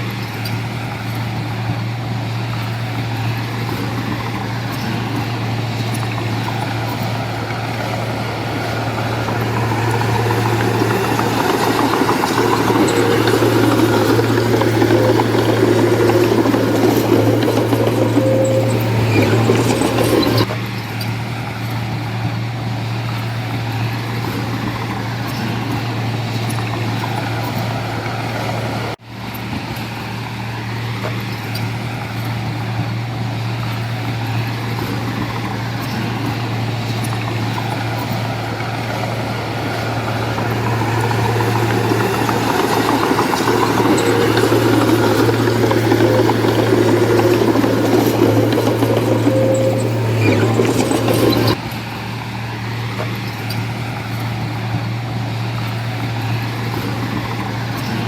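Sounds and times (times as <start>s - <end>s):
diesel machinery engine running: 0.0s - 58.0s.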